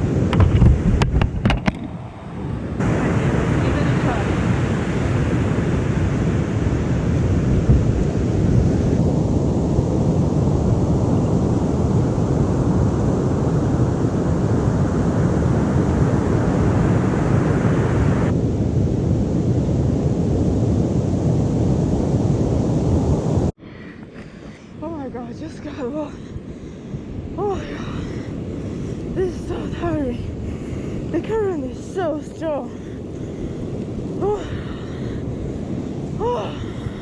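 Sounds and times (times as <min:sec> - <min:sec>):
heavy ocean surf: 0:00.0 - 0:37.0
wind buffeting microphone: 0:00.0 - 0:37.0.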